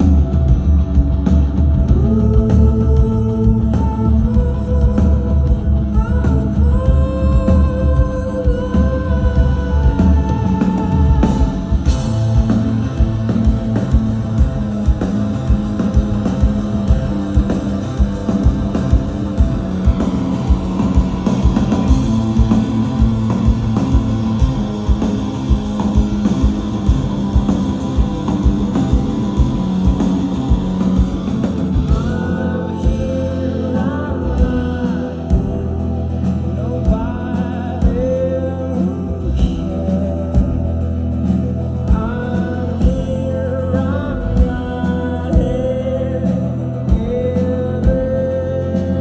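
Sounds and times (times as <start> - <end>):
bass guitar: 0.0 - 49.0
electric guitars: 0.0 - 49.0
person singing: 1.8 - 49.0
drum beat: 10.0 - 32.3.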